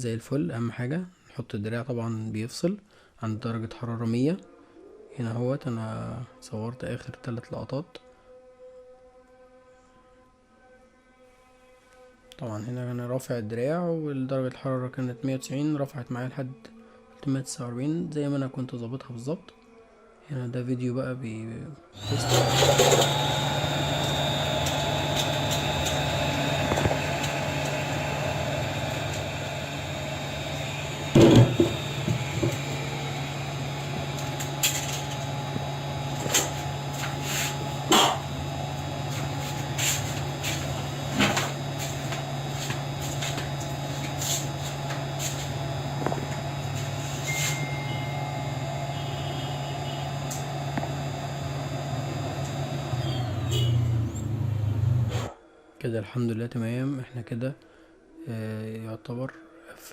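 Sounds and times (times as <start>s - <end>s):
hot air blower running: 22.0s - 55.3s.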